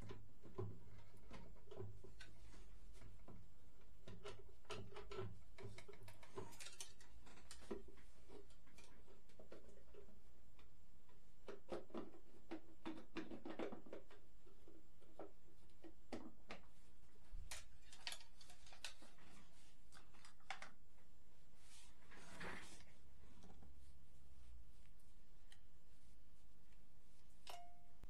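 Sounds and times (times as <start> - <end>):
hands handling small parts and tools: 0.0 - 16.7, 17.4 - 21.1
faint steady hum: 14.1 - 28.0.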